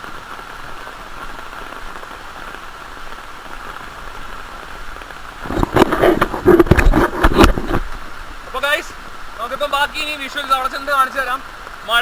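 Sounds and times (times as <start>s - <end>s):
heavy rain: 0.0s - 12.0s
loud irregular thumps and knocks: 5.4s - 8.0s.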